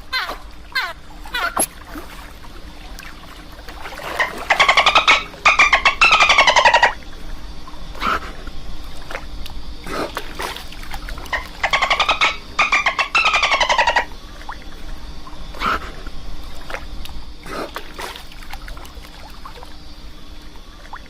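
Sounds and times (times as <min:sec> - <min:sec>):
dolphin buzzy chattering: 0:00.0 - 0:01.7, 0:04.2 - 0:07.0, 0:11.3 - 0:14.1
dolphin whistle-like sweeps: 0:01.4 - 0:01.7.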